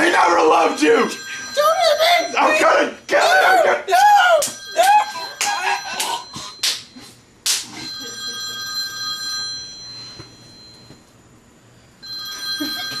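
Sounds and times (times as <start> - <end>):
telephone bell ringtone: 0.0 - 2.7, 4.5 - 7.0, 7.8 - 11.1, 12.0 - 13.0.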